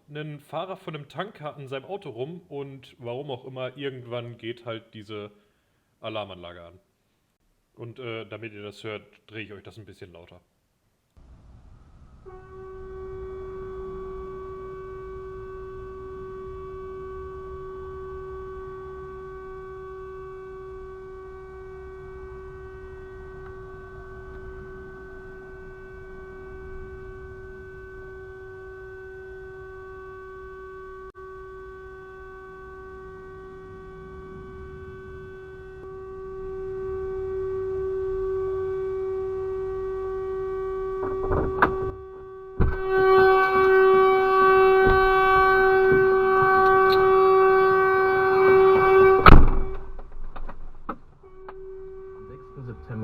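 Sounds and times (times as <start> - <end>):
low rumble: 11.2 - 19.2, 31.0 - 53.0
vehicle alarm tone: 12.3 - 49.9, 51.2 - 53.0
sharp knocks: 42.6 - 42.9, 48.8 - 51.0.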